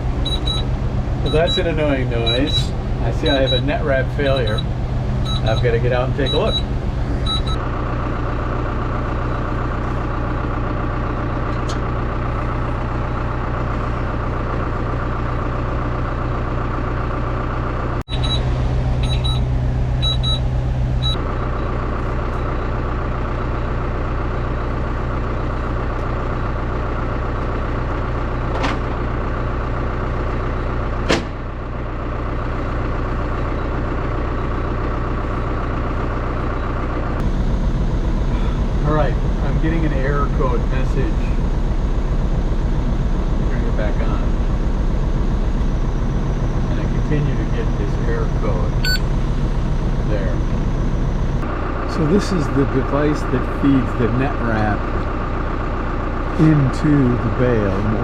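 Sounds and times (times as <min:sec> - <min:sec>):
tractor engine running: 0:00.0 - 0:58.0
high electronic beeps: 0:00.2 - 0:00.7, 0:01.3 - 0:07.6, 0:18.1 - 0:21.2, 0:48.7 - 0:49.1.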